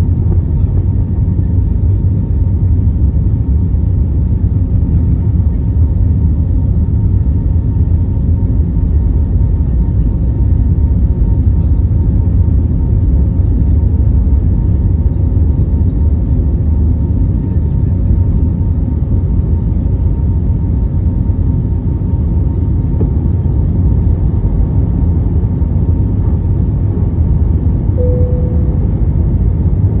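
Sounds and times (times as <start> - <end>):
jet engines low rumble: 0.0 - 30.0
faint steady hum: 25.4 - 30.0
short tone: 28.0 - 29.3.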